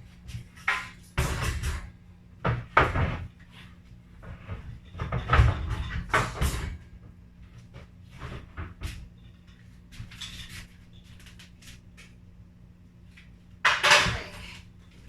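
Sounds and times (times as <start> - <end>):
steady low hum: 0.0 - 15.0
kitchen items knocking and clattering: 0.3 - 3.3, 4.2 - 7.0, 13.6 - 14.6.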